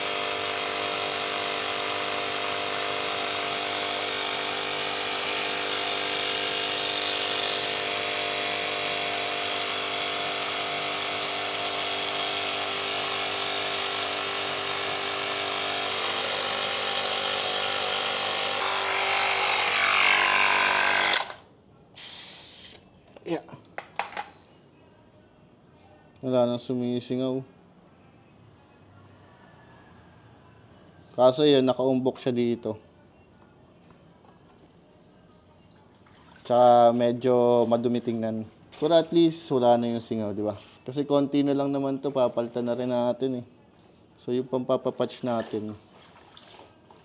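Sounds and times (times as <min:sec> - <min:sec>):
electric tyre inflator motor: 0:00.0 - 0:21.5.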